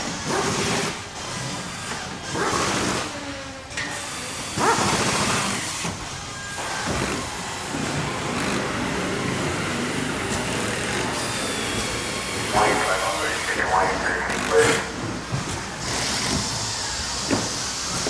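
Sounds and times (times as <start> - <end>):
factory machinery running: 6.5 - 18.0.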